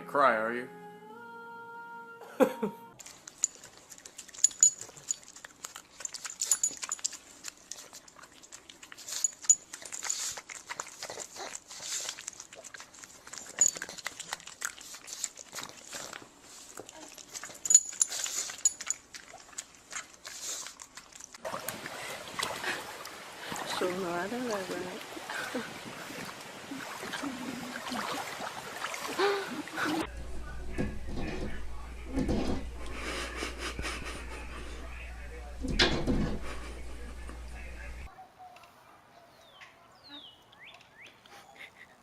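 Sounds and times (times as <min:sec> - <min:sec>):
puppy whining: 0:16.8 - 0:18.6.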